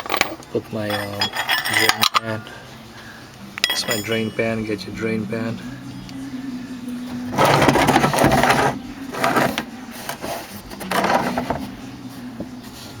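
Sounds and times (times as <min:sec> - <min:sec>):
drain pan scraping on ground: 0:07.2 - 0:11.8.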